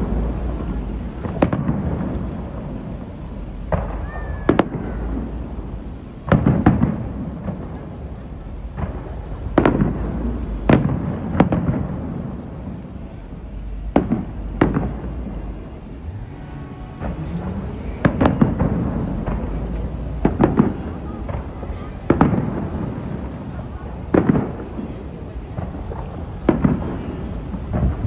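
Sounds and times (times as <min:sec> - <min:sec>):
steady low rumble: 0:00.0 - 0:04.2, 0:04.8 - 0:24.1, 0:25.3 - 0:28.0
fireworks bangs: 0:00.0 - 0:28.0.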